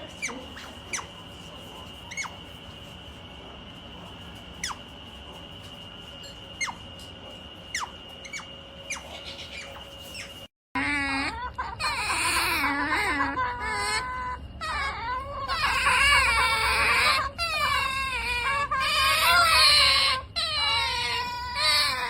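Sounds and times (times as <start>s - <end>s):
otters calling: 0.0s - 1.3s, 2.0s - 2.6s, 4.6s - 4.9s, 6.2s - 7.0s, 7.6s - 22.0s.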